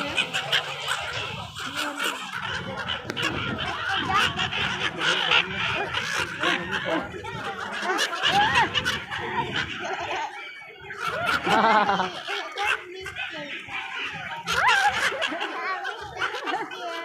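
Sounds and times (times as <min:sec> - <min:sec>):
wind buffeting microphone: 0:00.0 - 0:10.2
gulls calling: 0:00.0 - 0:17.0.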